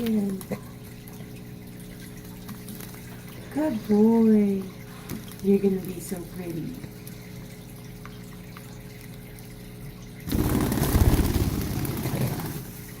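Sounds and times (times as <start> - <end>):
bird splashing in water: 10.3 - 12.6.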